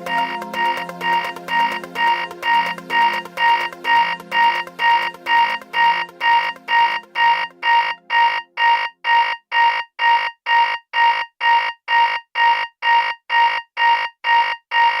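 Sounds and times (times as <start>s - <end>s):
low musical layer: 0.0s - 7.6s
high-pitched electronic alarm beeps: 0.0s - 15.0s.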